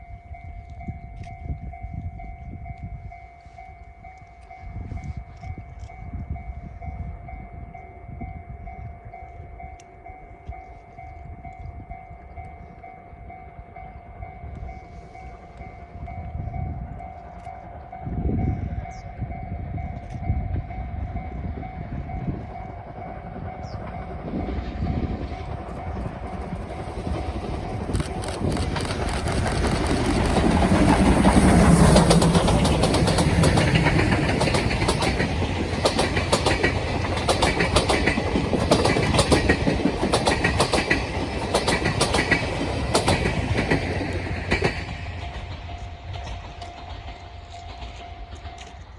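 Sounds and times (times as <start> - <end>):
steam locomotive exhaust chuffs: 20.2 - 48.9
wheels clattering over rail joints: 23.0 - 48.9.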